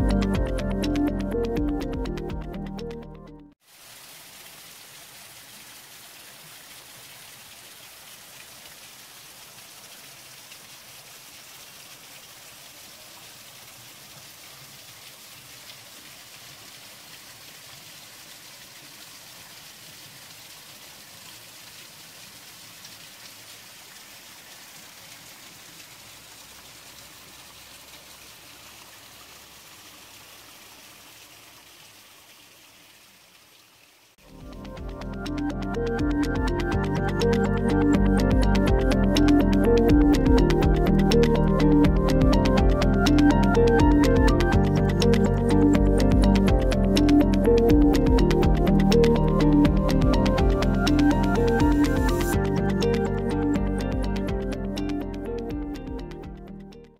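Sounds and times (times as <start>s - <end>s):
water rushing hiss: 3.6s - 34.5s.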